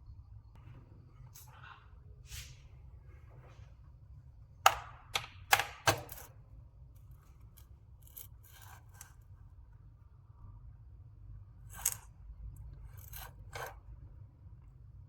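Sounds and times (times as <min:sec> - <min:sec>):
sharp clicks and knocks of tools: 0:04.7 - 0:06.4.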